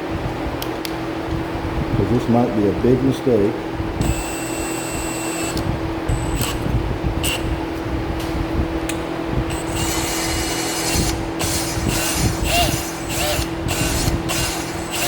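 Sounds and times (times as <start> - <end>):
valve grinding on seat: 4.0 - 6.6, 9.5 - 15.0
electric drill motor whine: 4.0 - 7.6, 9.5 - 15.0.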